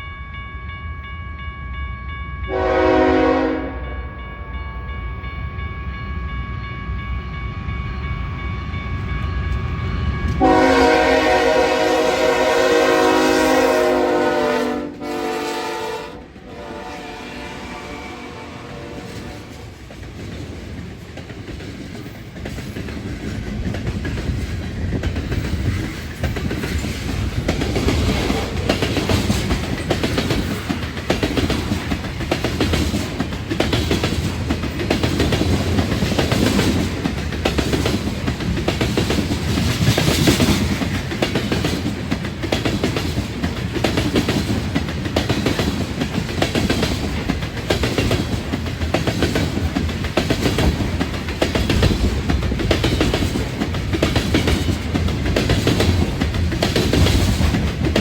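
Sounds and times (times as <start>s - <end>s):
train wheels clickety-clack: 8.8s - 17.1s, 18.4s - 58.0s.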